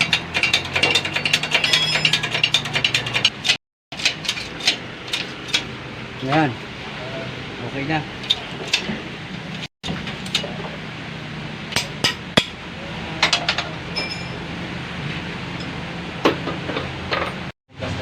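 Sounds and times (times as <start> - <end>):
metal tools clinking: 0.0 - 3.3, 13.9 - 14.4.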